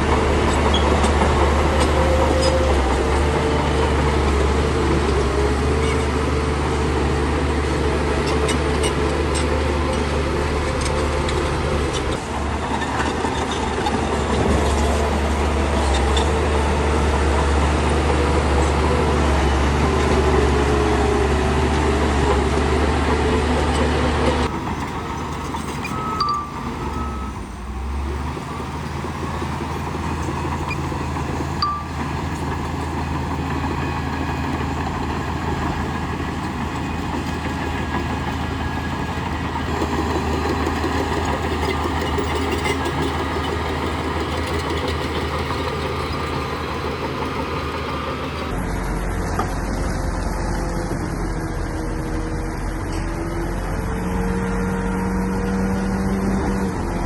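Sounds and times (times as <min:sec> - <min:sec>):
heavy diesel machinery running: 0:00.0 - 0:57.0
short reversing beeps: 0:24.7 - 0:29.1, 0:31.6 - 0:32.1.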